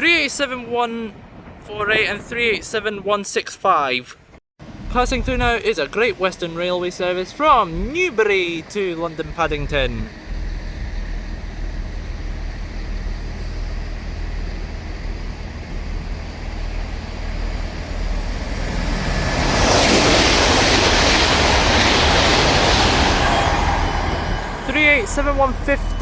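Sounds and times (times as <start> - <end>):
train passing at speed: 4.6 - 26.0.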